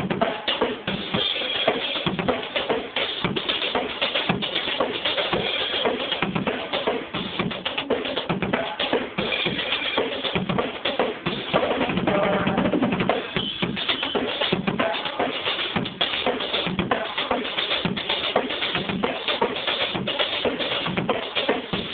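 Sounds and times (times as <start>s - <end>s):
drum kit playing: 0.0s - 21.9s
bass drum hits: 11.9s - 13.1s.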